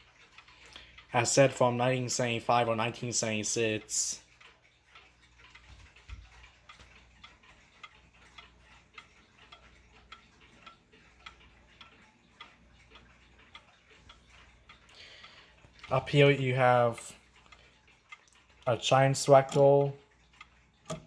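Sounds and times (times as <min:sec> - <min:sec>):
clock ticking: 0:00.0 - 0:21.0.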